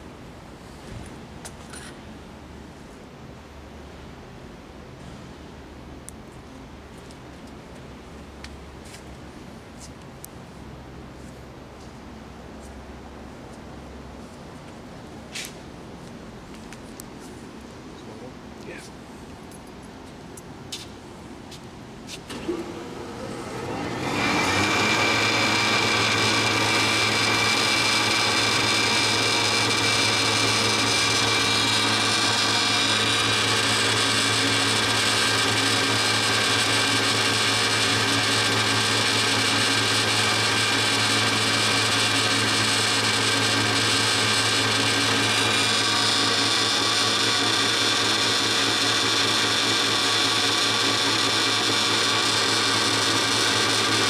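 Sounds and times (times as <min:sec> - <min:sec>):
band saw motor hum: 0:22.3 - 0:54.0
high-pitched blade whine: 0:23.6 - 0:54.0.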